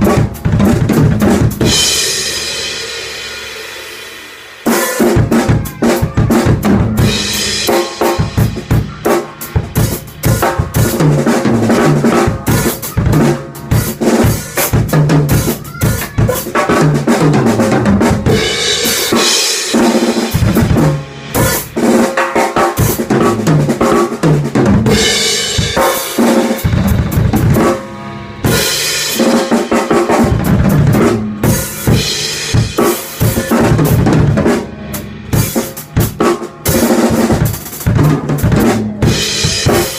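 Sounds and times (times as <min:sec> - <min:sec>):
cymbal crashes ringing: 0:07.0 - 0:09.2
bass drum and snare hits: 0:28.5 - 0:39.9.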